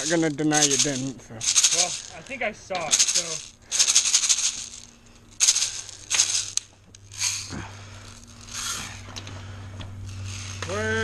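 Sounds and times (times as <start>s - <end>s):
bbs rattling: 0.0s - 9.3s, 10.0s - 10.8s.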